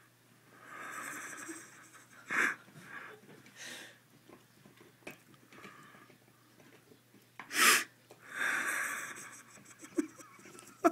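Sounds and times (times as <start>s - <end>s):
person breathing out: 7.5s - 9.2s.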